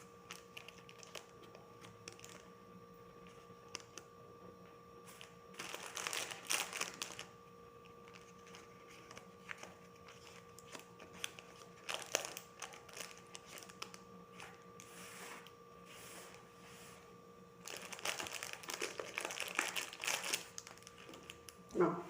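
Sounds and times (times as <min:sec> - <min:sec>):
craft materials crinkling: 0:00.3 - 0:02.5, 0:05.1 - 0:07.3, 0:08.0 - 0:14.9, 0:17.6 - 0:21.6.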